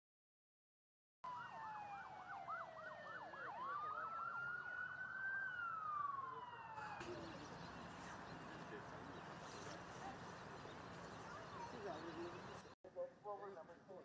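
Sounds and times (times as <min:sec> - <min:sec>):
siren yelping: 0:01.2 - 0:07.7
sirens wailing: 0:01.2 - 0:12.8.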